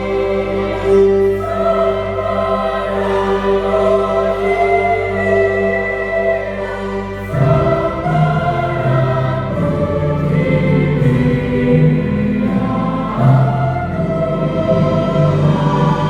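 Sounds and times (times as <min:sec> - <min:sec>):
choir singing a carol: 0:00.0 - 0:16.0.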